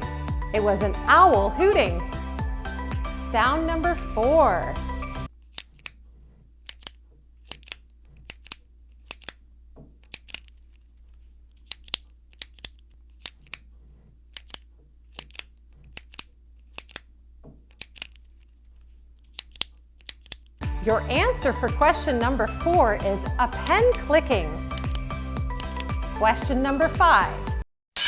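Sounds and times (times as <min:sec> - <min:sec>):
retractable pen clicking: 0:06.6 - 0:09.4, 0:10.0 - 0:10.6, 0:11.6 - 0:13.7, 0:14.3 - 0:17.1, 0:17.7 - 0:18.4, 0:19.3 - 0:20.6, 0:24.7 - 0:26.0.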